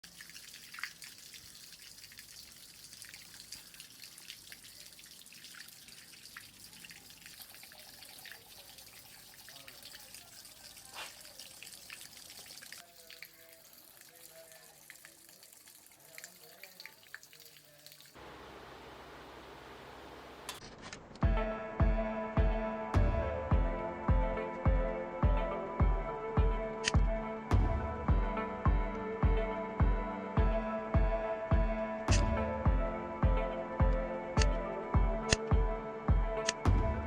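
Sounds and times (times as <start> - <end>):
small drips and ticks: 0.0 - 18.2
water running and splashing: 0.0 - 20.6.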